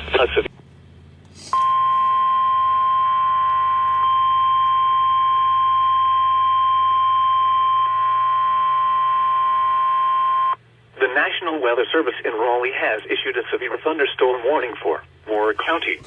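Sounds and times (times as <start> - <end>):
steady high-pitched alarm tone: 1.5 - 10.6.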